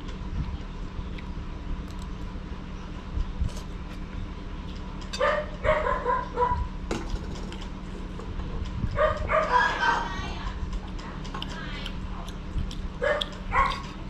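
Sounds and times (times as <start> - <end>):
small dog yapping: 5.2 - 6.6, 9.0 - 10.1, 13.0 - 14.0.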